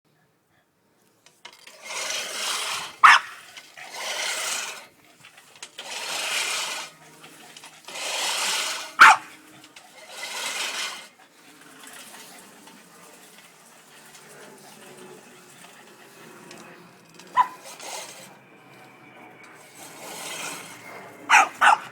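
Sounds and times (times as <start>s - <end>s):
push lawnmower blades whirring: 1.2s - 21.9s
dog barking: 3.0s - 3.4s, 9.0s - 9.3s, 17.4s - 17.6s, 21.3s - 21.9s.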